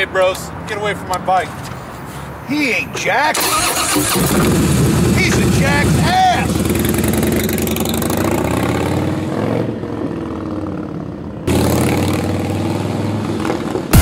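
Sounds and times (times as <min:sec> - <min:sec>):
motorcycle engine running: 0:04.4 - 0:08.7.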